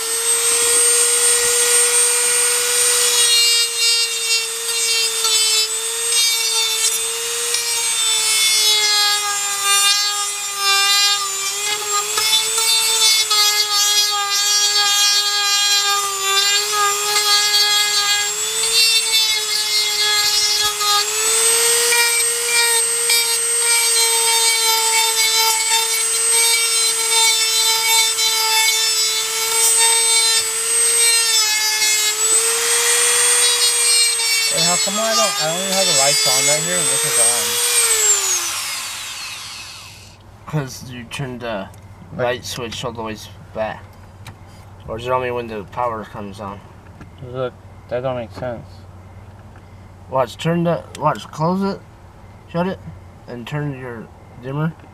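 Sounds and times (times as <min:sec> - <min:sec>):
power tool grinding trim: 0:00.0 - 0:41.4.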